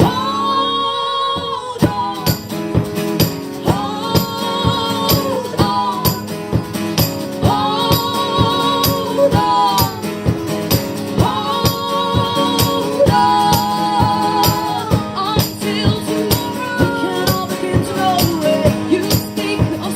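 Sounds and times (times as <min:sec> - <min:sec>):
steady percussive beat: 0:01.8 - 0:19.9
voices holding sung notes: 0:03.6 - 0:06.4, 0:07.4 - 0:19.9.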